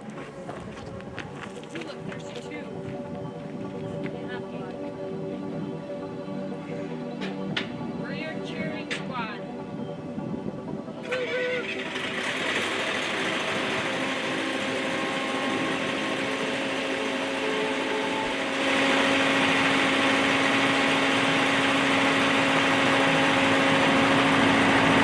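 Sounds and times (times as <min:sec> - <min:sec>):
backhoe engine running: 0:11.0 - 0:25.0.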